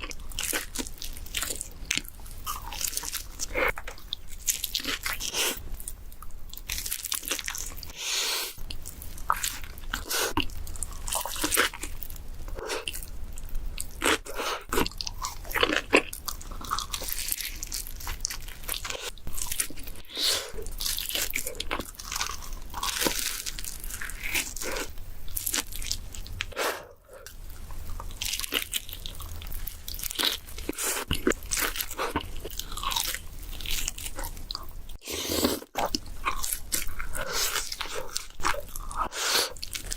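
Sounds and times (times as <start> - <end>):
biting and chewing pizza: 13.8 - 26.9, 27.9 - 39.9.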